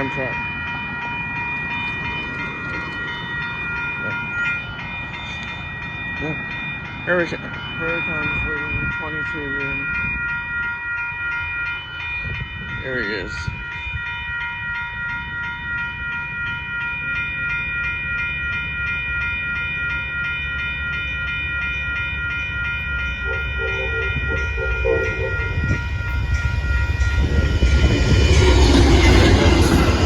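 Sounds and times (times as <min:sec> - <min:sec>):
passing train rumble: 0:21.0 - 0:30.0
train air horn: 0:23.2 - 0:26.2.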